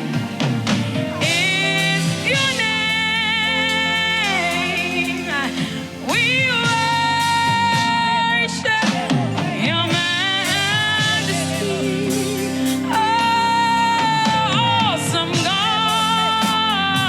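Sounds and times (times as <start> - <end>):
singer holding long notes: 0.0 - 17.0
sustained keyboard chords: 0.0 - 17.0.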